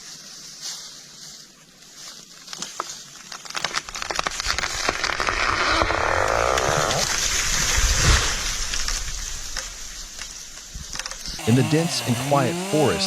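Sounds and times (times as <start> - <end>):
tree crashing through branches: 2.5 - 11.3
wood cracking and snapping: 2.5 - 11.4.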